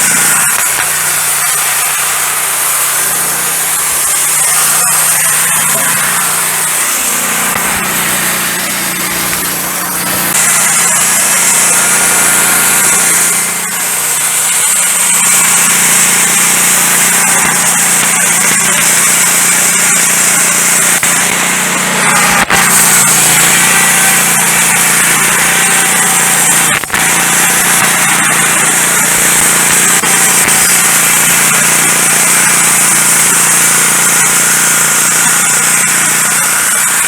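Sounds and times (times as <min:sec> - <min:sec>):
band sawmill cutting log: 0:00.0 - 0:37.0.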